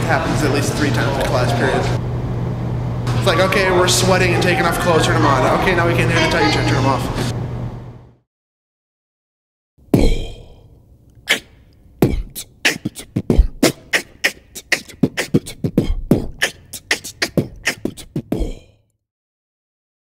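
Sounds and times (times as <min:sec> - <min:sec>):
beatboxing: 0:10.0 - 0:18.8.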